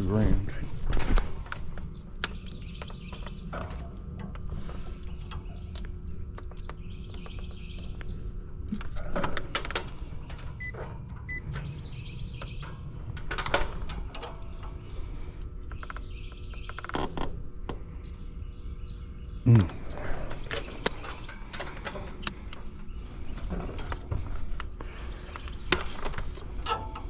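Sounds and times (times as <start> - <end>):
steady low rumble: 0.0 - 16.6
birds chirping: 0.0 - 27.0.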